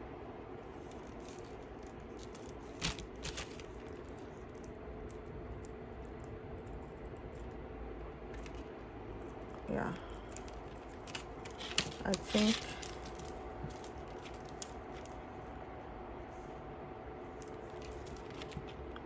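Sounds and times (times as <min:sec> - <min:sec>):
low background hum: 0:00.0 - 0:19.0
beads clicking and rattling: 0:00.8 - 0:07.5, 0:08.3 - 0:15.2, 0:17.4 - 0:19.0.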